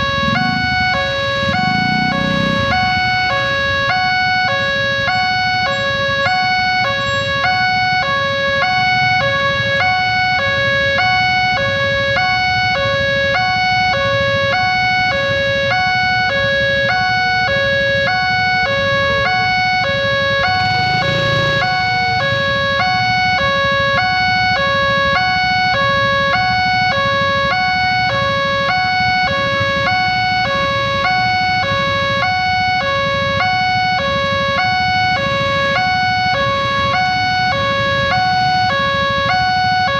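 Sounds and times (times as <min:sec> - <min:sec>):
low rumble: 0:00.0 - 0:03.6
two-tone level crossing siren: 0:00.0 - 0:39.9.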